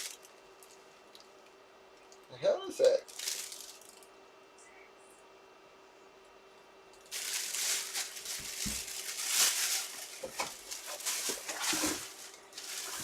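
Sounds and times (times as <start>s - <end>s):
plastic packaging crinkling: 0.0s - 1.3s, 3.0s - 4.1s, 7.0s - 13.0s.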